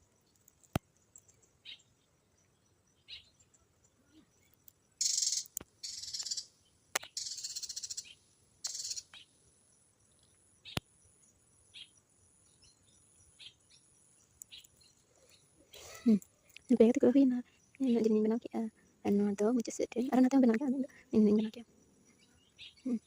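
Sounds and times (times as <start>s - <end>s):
short high bird chirps: 5.0s - 9.3s
buzzy hissing bird calls: 5.0s - 9.4s, 14.5s - 16.2s.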